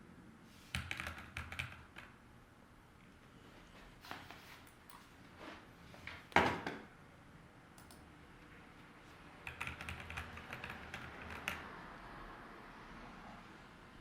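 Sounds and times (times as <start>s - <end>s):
keyboard keys clicking: 9.4s - 11.6s.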